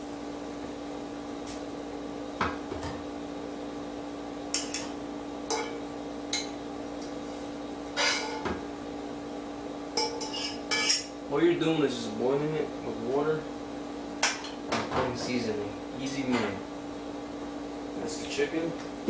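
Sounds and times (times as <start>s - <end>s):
steady low hum: 0.0s - 19.0s
utensils clinking against pot and dishes: 4.5s - 6.6s, 7.9s - 8.6s, 10.0s - 11.1s, 14.2s - 16.6s.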